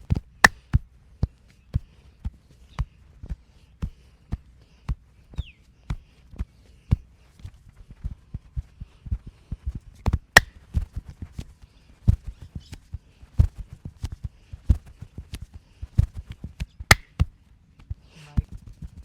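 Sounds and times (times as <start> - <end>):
soft thumps and taps of massage: 0.0 - 19.0
sharp smacks: 16.9 - 17.2.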